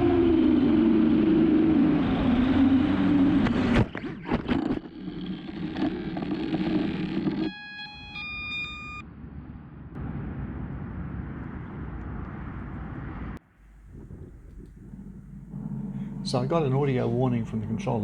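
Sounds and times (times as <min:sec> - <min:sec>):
drone motors buzzing: 0:00.0 - 0:09.0, 0:13.6 - 0:18.0
electronic beeps: 0:07.4 - 0:09.0
wind noise: 0:09.0 - 0:18.0.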